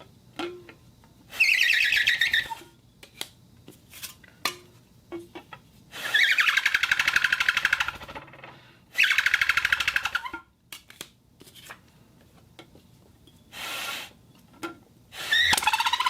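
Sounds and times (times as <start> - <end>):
whistle fluttering warble: 1.4 - 2.6, 6.0 - 7.9, 15.2 - 16.0
short hiss: 13.5 - 14.2.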